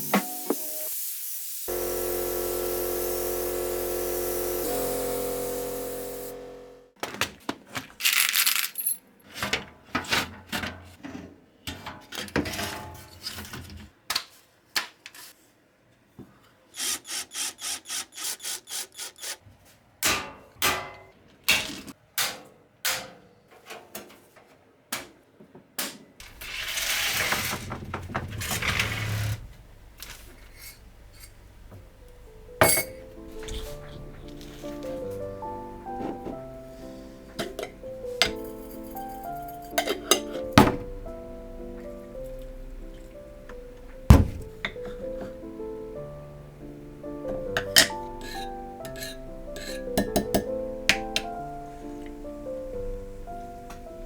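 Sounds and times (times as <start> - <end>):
held musical chord: 1.7 - 7.0, 31.8 - 54.0
scraping rustle: 26.2 - 31.4.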